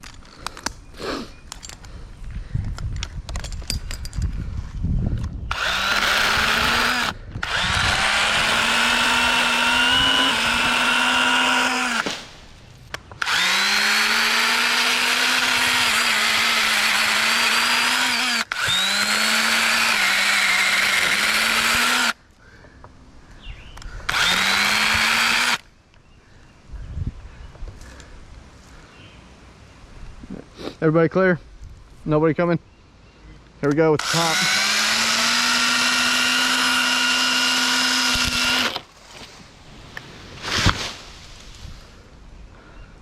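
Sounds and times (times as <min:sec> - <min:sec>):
electric pruning saw motor whine: 0:05.5 - 0:12.2, 0:13.2 - 0:22.2, 0:24.1 - 0:25.6, 0:34.0 - 0:38.8.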